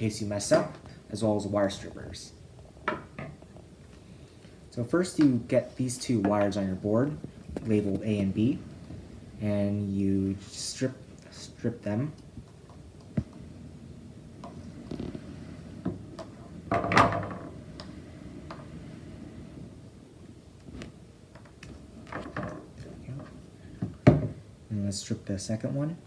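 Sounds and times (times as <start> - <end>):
handling knocks: 20.8 - 24.5.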